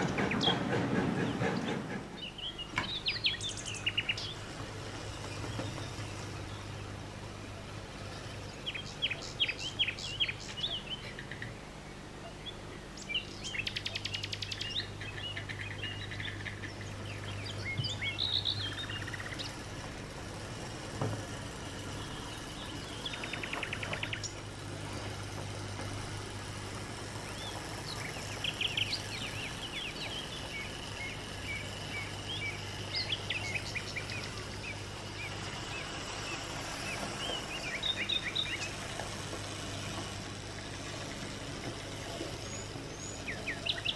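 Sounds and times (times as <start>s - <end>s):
birds chirping and singing: 0.0s - 43.9s
steady low hum: 0.0s - 43.9s
bird trills: 12.2s - 19.9s, 27.2s - 38.8s.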